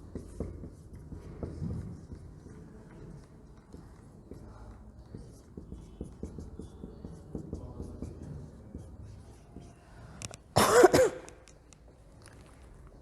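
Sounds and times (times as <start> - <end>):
soft tapping and clicking: 0.1 - 10.5
person coughing: 10.6 - 11.4.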